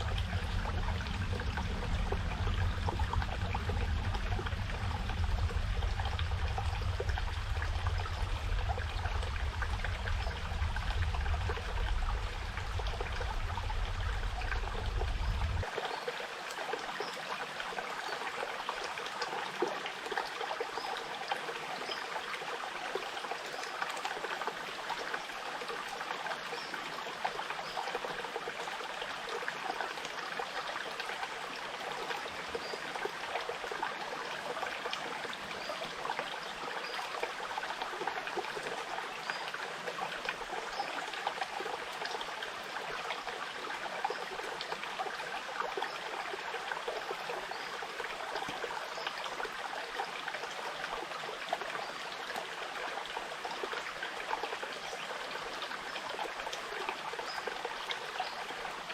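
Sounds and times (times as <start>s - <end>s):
stream trickling and babbling: 0.0s - 58.9s.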